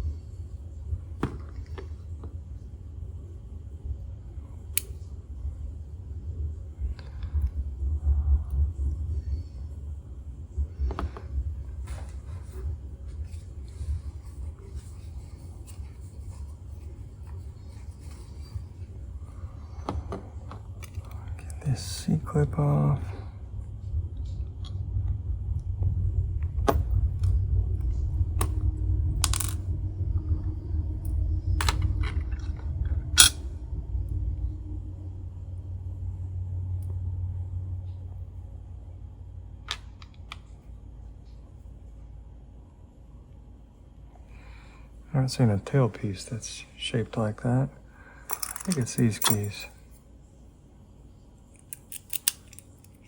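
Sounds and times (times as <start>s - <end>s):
steady low rumble: 0.0s - 53.0s
metallic clicks of steel parts: 33.2s - 33.4s, 48.3s - 49.7s, 51.6s - 53.0s
metal clicks and scrapes of padlock: 51.6s - 53.0s.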